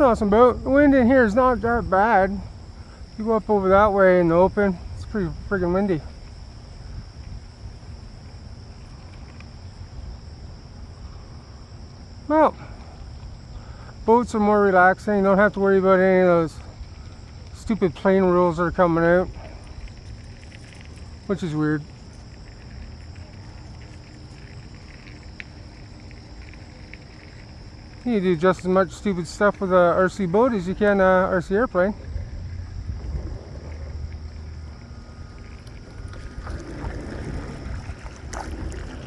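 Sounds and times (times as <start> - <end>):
crickets trilling: 0.0 - 39.0
wind rumble on microphone: 0.0 - 39.0
faint clicks: 8.8 - 9.5, 19.4 - 29.7, 32.5 - 38.9.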